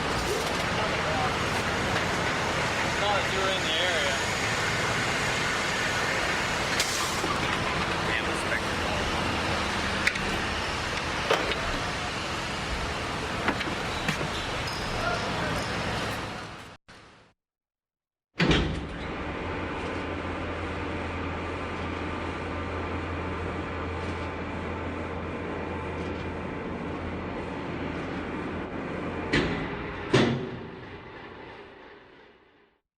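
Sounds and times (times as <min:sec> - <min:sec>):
elevator rumbling and hissing: 0:00.0 - 0:16.7
elevator clunks: 0:06.8 - 0:12.3, 0:13.2 - 0:15.0.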